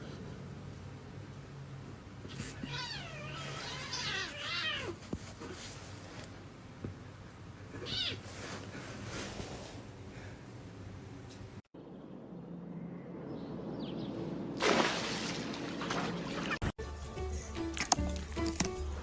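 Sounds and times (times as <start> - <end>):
cat meowing: 2.3 - 5.0, 7.8 - 8.2.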